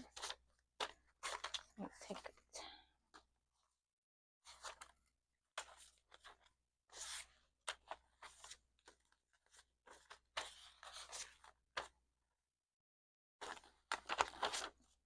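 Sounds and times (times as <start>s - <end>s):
paper banknotes rustling: 0.1s - 2.2s, 13.4s - 15.0s.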